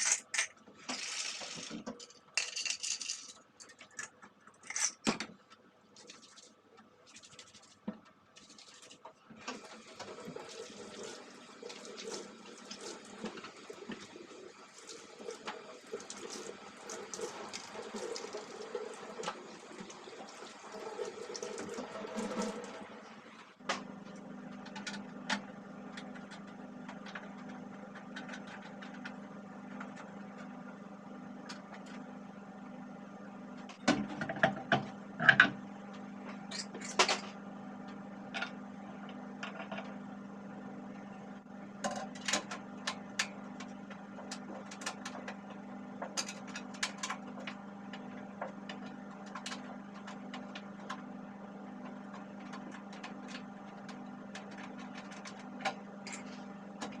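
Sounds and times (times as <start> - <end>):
small clatters of parts: 0.0 - 6.5
tap water running into sink: 9.4 - 22.9.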